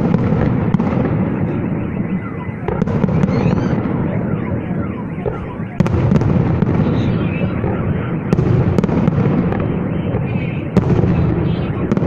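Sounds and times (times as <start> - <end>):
rumble of bursting fireworks: 0.0 - 12.0
sharp firework bangs: 0.0 - 12.0.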